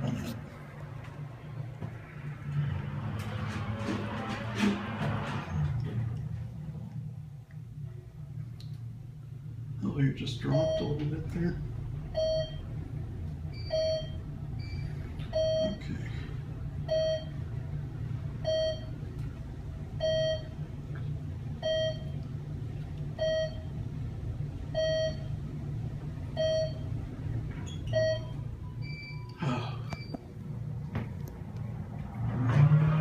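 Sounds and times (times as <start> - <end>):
elevator car humming: 0.0 - 33.0
elevator floor-passing beeps: 10.5 - 11.2, 12.1 - 12.7, 13.5 - 15.8, 16.8 - 17.4, 18.4 - 19.0, 20.0 - 20.6, 21.6 - 22.2, 23.2 - 23.8, 24.7 - 25.4, 26.3 - 27.0, 27.6 - 30.3.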